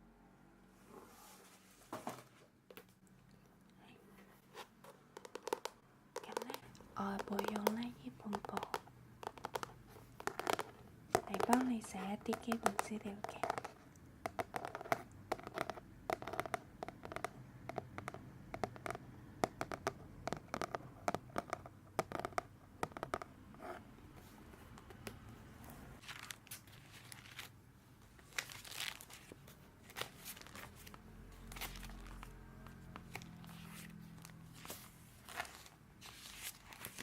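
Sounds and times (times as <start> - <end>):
paper clicks and rustles: 33.0 - 37.0.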